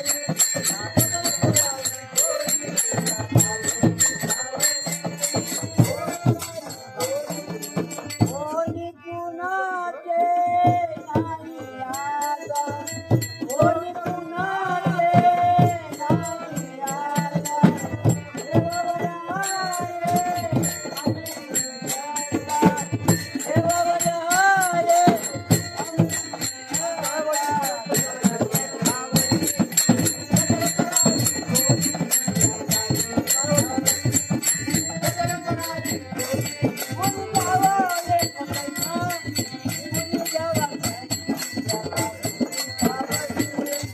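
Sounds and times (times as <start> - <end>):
person singing: 0.0 - 43.9.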